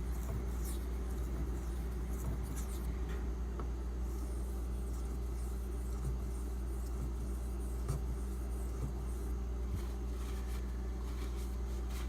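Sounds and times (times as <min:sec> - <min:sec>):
knife scraping on whetstone: 0:00.0 - 0:02.9
low electrical hum: 0:00.0 - 0:12.0.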